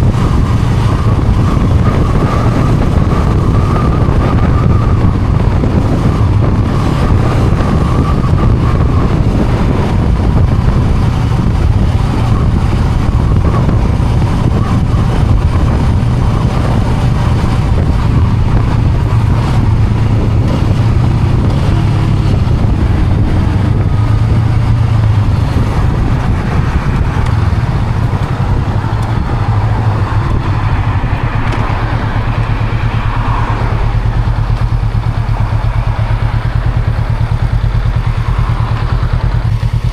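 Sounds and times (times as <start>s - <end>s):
motorcycle engine running: 0.0s - 39.9s
noisy rush: 0.0s - 39.9s.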